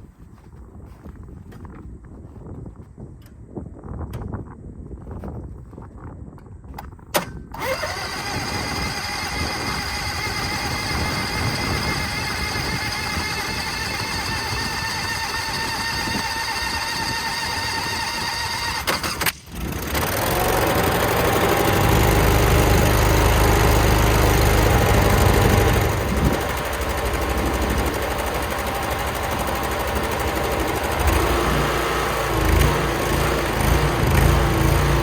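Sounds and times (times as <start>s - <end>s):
small engine running: 7.6s - 35.0s.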